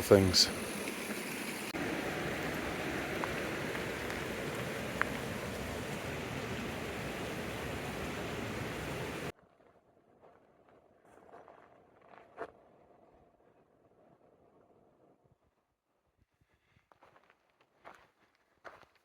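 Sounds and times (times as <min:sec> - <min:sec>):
stream running: 0:00.0 - 0:09.3.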